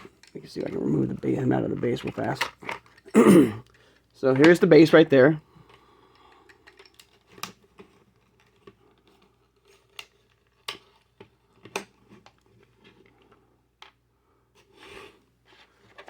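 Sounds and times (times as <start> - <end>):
plastic toy parts clicking: 5.7 - 11.9.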